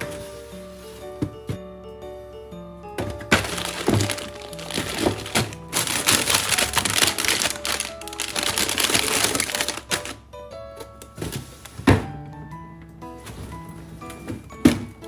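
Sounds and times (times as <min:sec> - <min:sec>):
background music: 0:00.0 - 0:15.0
dense crackling crinkling noise: 0:03.3 - 0:10.2.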